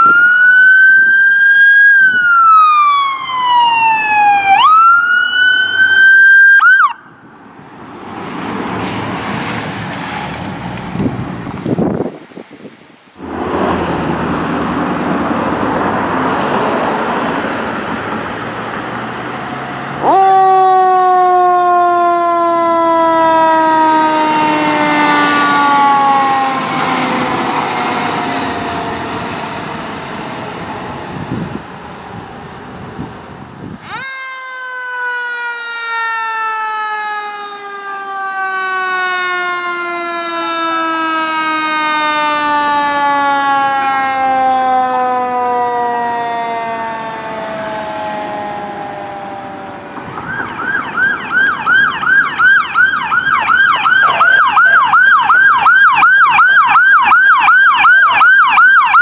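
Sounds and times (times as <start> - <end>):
mechanical siren wailing: 0.0 - 7.3, 20.0 - 29.7, 33.7 - 59.0
fire engine engine and road noise: 0.0 - 59.0.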